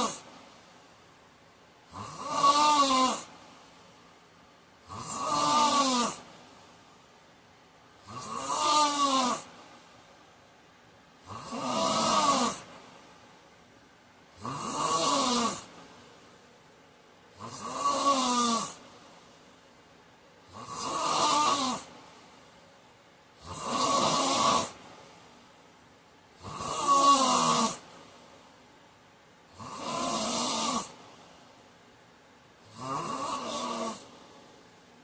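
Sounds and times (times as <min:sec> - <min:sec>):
man snoring: 0:00.0 - 0:00.3, 0:01.9 - 0:03.3, 0:04.8 - 0:06.3, 0:08.0 - 0:09.5, 0:11.2 - 0:12.7, 0:14.4 - 0:15.8, 0:17.3 - 0:18.8, 0:20.4 - 0:22.0, 0:23.4 - 0:24.8, 0:26.4 - 0:27.9, 0:29.5 - 0:31.0, 0:32.6 - 0:34.2
quiet breathing: 0:14.4 - 0:35.0.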